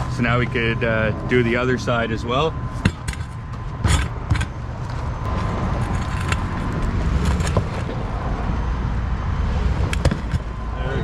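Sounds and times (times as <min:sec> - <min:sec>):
truck engine rumbling: 0:00.0 - 0:11.0
sharp knocks and clanks: 0:02.8 - 0:08.0.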